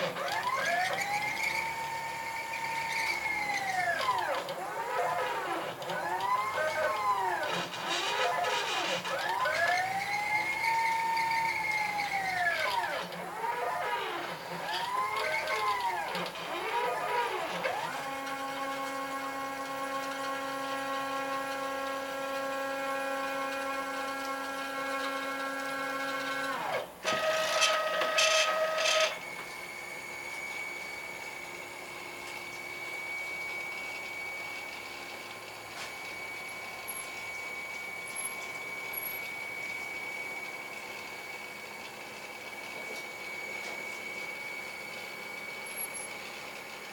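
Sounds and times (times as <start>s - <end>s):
stepper motors whining: 0.0s - 46.9s.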